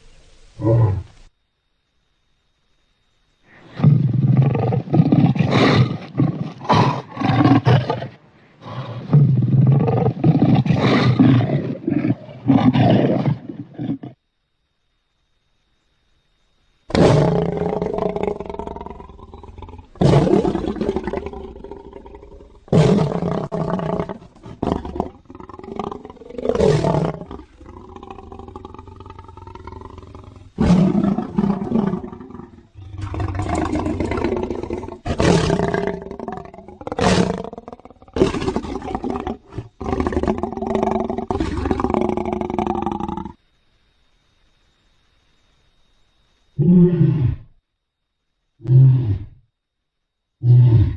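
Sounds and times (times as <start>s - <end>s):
lion roars and growls: 16.9s - 43.4s.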